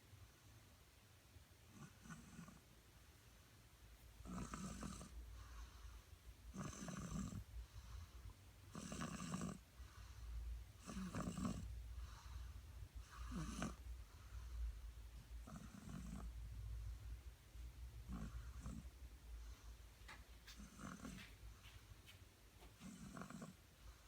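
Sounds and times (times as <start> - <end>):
baby snoring: 4.2 - 5.2, 6.5 - 7.5, 8.7 - 9.6, 10.8 - 11.7, 13.1 - 13.8, 15.4 - 16.3, 18.0 - 18.9, 20.5 - 21.3, 22.8 - 23.6.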